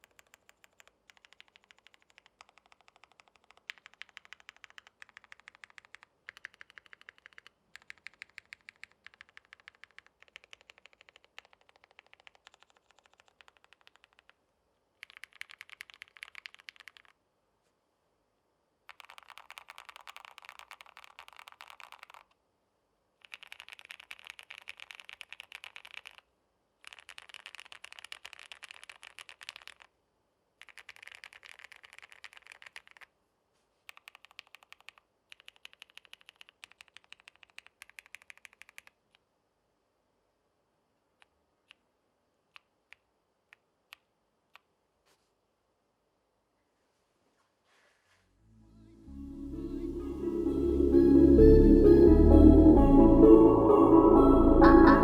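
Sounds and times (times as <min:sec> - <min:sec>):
mechanical keyboard typing: 0:00.0 - 0:14.4, 0:15.0 - 0:17.1, 0:18.9 - 0:22.3, 0:23.2 - 0:26.2, 0:26.8 - 0:29.9, 0:30.6 - 0:33.1, 0:33.9 - 0:39.0.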